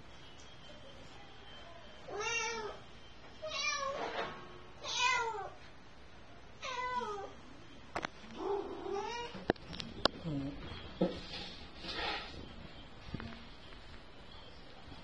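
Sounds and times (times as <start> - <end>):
cat meowing: 4.8 - 5.6, 8.4 - 9.4.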